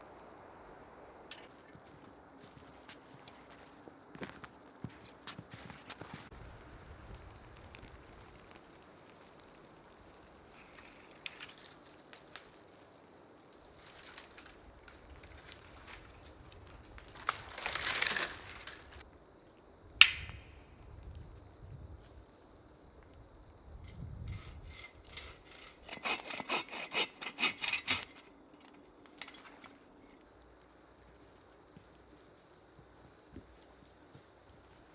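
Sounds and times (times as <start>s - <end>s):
footsteps crunching in snow: 1.3s - 6.6s
rustling: 4.9s - 19.0s.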